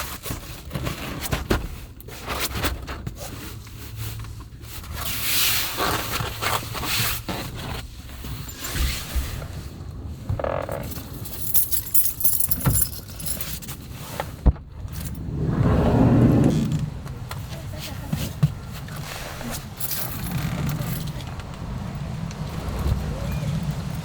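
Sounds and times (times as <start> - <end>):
wind gusts: 14.6 - 24.0
heavy rain on a van: 16.7 - 24.0.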